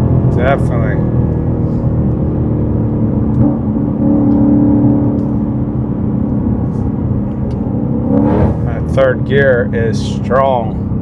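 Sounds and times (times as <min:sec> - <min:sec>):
supercharged car engine accelerating: 0:00.0 - 0:10.4.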